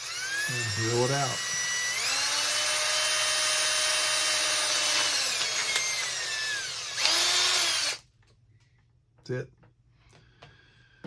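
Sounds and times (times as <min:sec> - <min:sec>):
power drill whining: 0:00.0 - 0:08.0.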